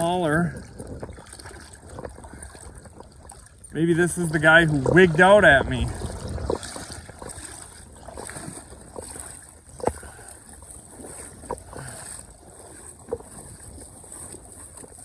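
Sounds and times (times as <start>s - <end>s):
wind on microphone: 0.0s - 10.2s.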